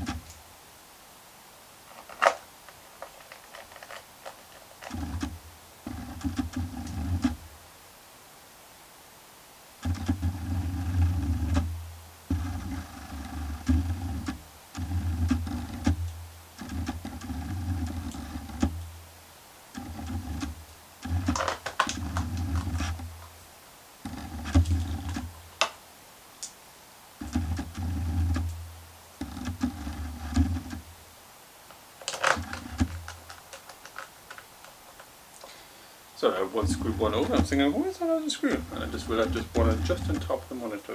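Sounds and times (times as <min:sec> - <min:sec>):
sharp clicks and taps: 0:19.8 - 0:23.3, 0:31.7 - 0:35.6.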